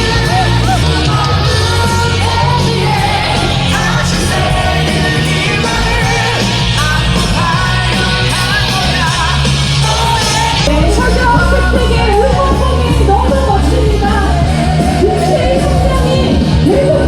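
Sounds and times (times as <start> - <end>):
heavy bass line: 0.0 - 17.0
loud rock music with singing: 0.0 - 17.0.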